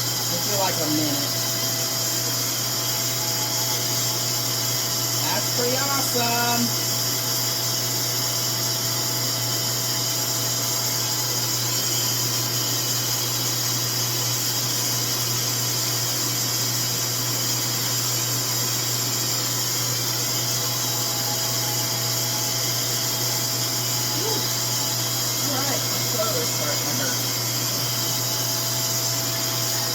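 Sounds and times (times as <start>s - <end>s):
hair dryer running: 0.0s - 12.2s, 18.4s - 29.9s.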